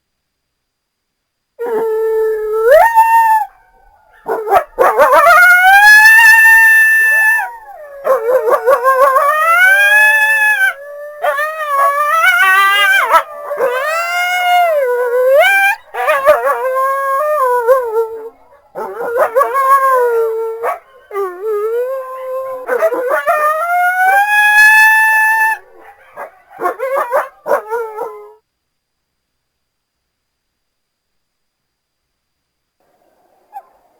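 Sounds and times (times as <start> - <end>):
coyotes howling and yipping: 1.6 - 28.4.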